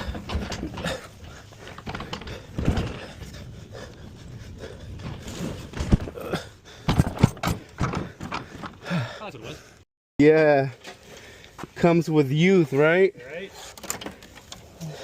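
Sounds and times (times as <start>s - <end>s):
heavy breathing: 0.0s - 9.8s, 10.9s - 11.8s, 13.4s - 15.0s
knocks and thumps of appliance handling: 6.9s - 8.8s.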